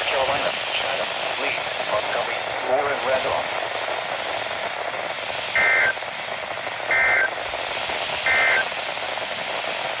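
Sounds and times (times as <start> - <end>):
radio hiss: 0.0 - 10.0
short data tone bursts: 5.6 - 6.0, 6.9 - 7.3, 8.3 - 8.7.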